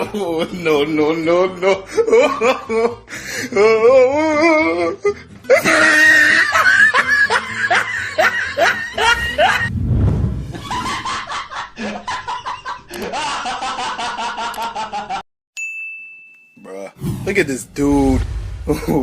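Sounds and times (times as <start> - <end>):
person laughing: 5.5 - 9.7, 10.5 - 15.2
low rumble: 9.4 - 11.1, 17.2 - 19.0.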